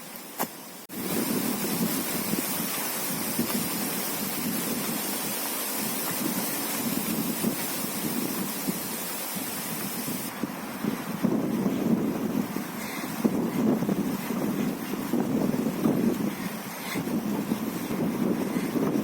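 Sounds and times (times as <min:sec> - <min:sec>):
gusty wind on microphone: 0:00.9 - 0:19.0.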